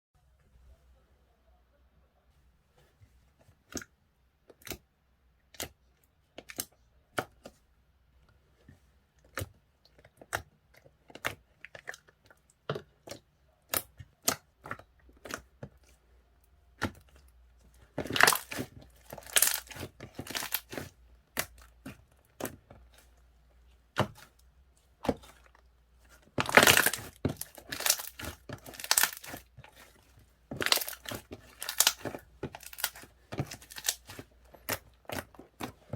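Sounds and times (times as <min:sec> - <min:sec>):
paper and plastic crinkling: 0:26.3 - 0:35.9.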